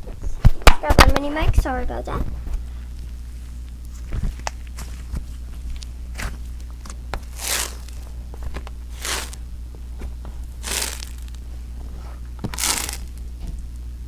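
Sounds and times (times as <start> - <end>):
slime squeezed by hand: 7.3 - 8.0, 9.0 - 9.4, 10.6 - 11.4, 12.5 - 13.2.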